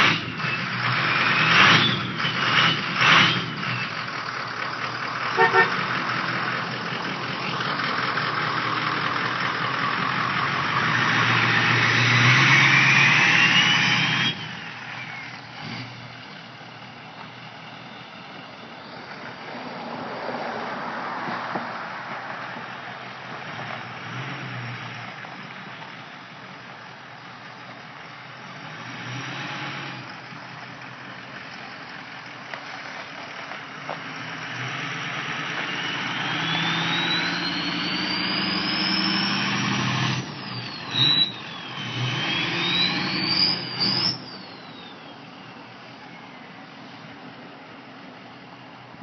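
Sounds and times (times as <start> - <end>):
truck engine running: 0.0 - 19.7
turbo whistle: 36.6 - 39.4, 40.5 - 45.0.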